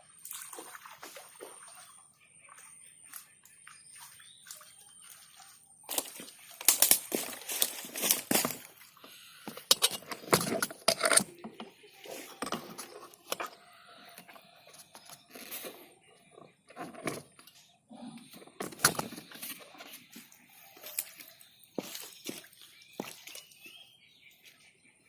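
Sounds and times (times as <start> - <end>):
handling clicks and knocks: 9.5 - 11.8.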